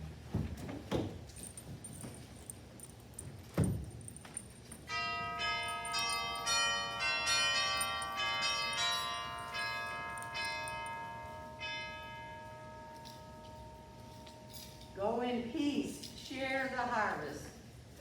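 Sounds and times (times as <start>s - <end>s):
bells ringing: 4.0s - 17.5s.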